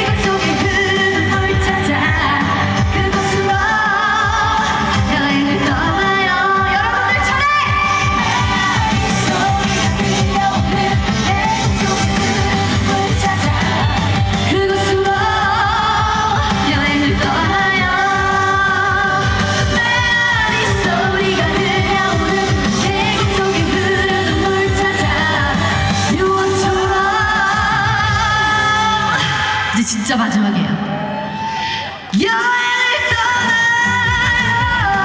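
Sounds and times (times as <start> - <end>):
woman singing: 0.0 - 30.8, 31.6 - 35.0
backing track with steady beat: 0.0 - 35.0.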